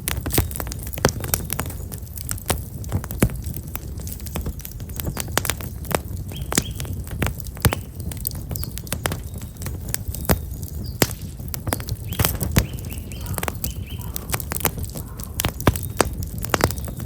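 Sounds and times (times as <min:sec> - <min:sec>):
campfire crackling and popping: 0:00.0 - 0:17.0
low fire rumble: 0:00.0 - 0:17.0
small birds chirping: 0:04.0 - 0:17.0.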